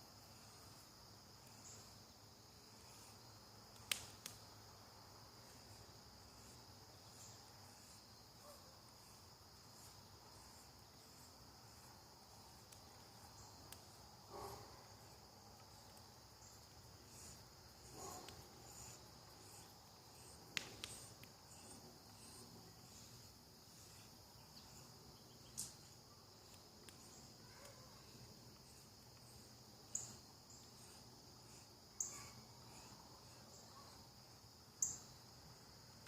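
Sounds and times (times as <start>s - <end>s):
crickets chirping: 0.0s - 36.0s
sharp cracks: 3.7s - 4.5s, 16.6s - 22.4s.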